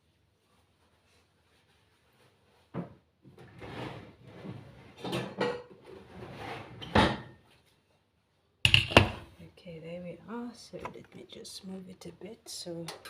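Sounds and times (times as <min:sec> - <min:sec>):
sharp knocks in a kitchen: 0:08.7 - 0:09.3.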